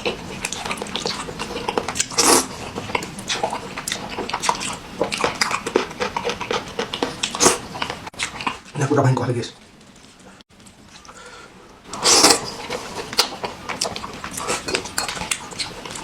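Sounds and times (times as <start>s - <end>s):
person chewing and biting: 0.0s - 8.7s, 11.9s - 16.0s.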